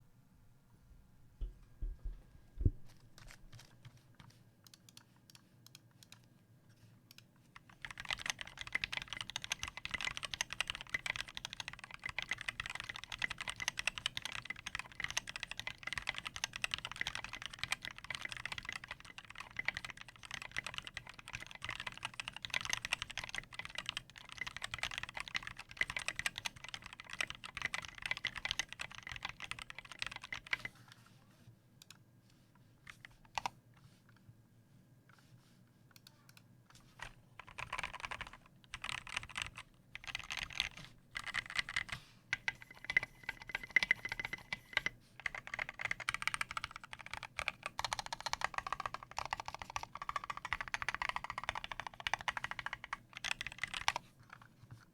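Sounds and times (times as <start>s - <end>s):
mechanical keyboard typing: 7.1s - 30.7s, 37.0s - 54.5s.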